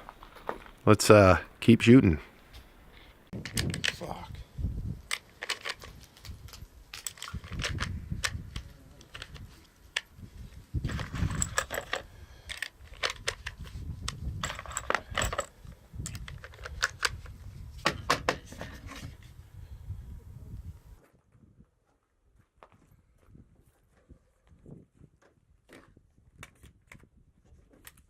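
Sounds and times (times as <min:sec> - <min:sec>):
wind rumble on microphone: 0:03.3 - 0:05.1, 0:05.7 - 0:21.8, 0:22.8 - 0:28.0
metallic clinks of gear: 0:10.9 - 0:13.3, 0:14.4 - 0:16.8.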